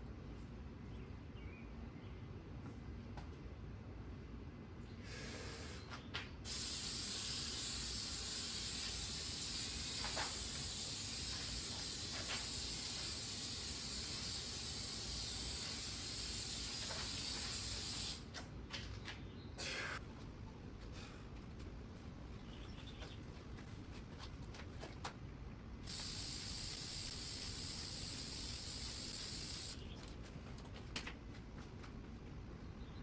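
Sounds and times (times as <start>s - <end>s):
aerosol spray can hissing: 6.5s - 18.2s, 25.9s - 29.8s.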